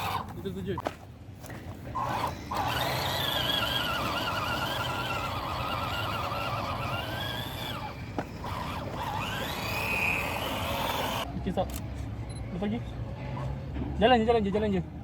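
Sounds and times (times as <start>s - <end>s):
toy car motor whining: 0.0s - 0.5s, 1.9s - 11.3s.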